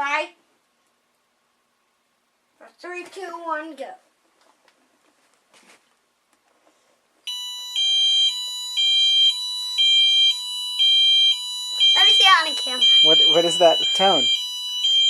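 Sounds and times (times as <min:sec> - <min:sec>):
fire alarm high-low tone: 0:07.3 - 0:15.0.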